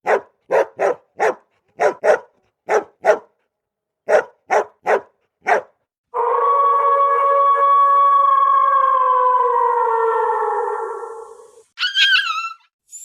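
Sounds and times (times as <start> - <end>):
dog-like barks: 0.0 - 3.4, 4.0 - 5.8
long steady howl: 6.1 - 11.6.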